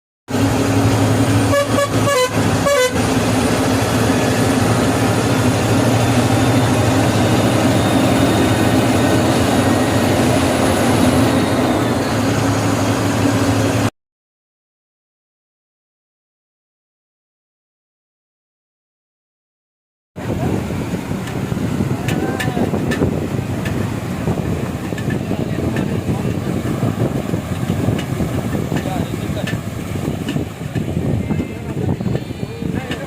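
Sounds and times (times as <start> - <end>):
vehicle engine drone and road noise: 0.3 - 13.9, 20.2 - 33.0
short horn toots: 1.5 - 3.0.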